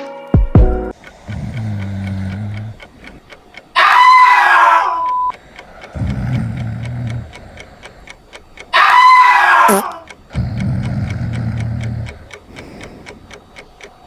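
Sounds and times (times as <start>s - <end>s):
steady ticking: 0.6s - 14.0s
person snoring: 1.0s - 3.2s, 5.4s - 8.1s, 9.7s - 13.3s.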